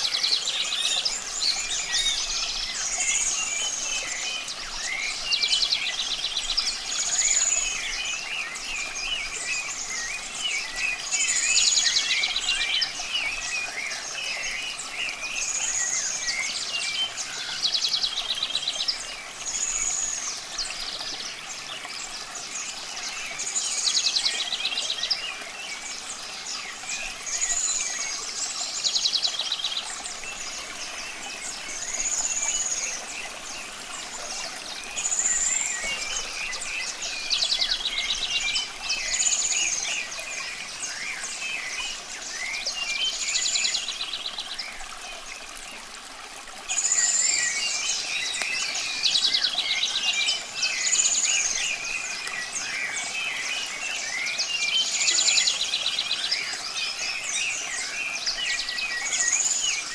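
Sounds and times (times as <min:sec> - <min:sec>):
birds singing and chirping: 0:00.0 - 0:45.5
running water hiss: 0:00.0 - 0:59.9.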